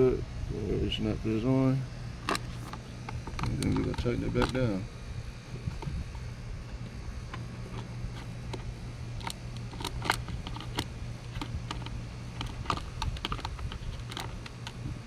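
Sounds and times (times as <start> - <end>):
steady low hum: 0.0 - 15.0
plastic and metal clicks and taps: 8.5 - 14.8.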